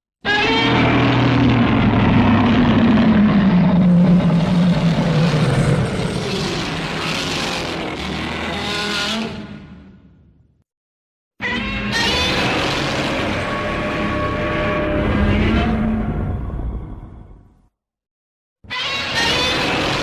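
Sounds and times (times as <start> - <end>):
rough creature roar: 0.2 - 9.8, 19.1 - 20.0.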